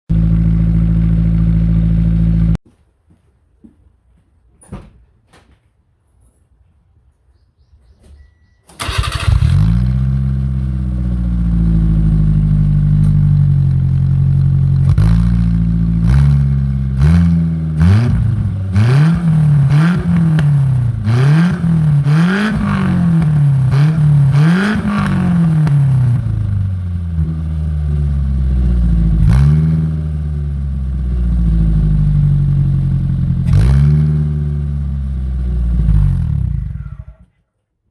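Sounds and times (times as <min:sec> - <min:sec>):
car engine idling and revving: 0:00.1 - 0:02.6, 0:08.8 - 0:37.2
exhaust afterfire pops: 0:14.8 - 0:15.5, 0:18.0 - 0:26.6.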